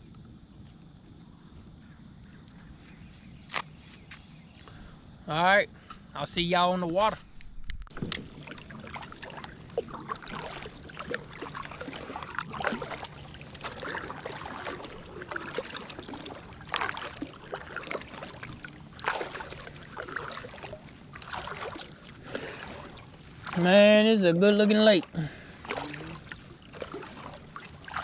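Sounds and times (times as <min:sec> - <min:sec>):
kayak paddle splashing: 0:06.9 - 0:28.0.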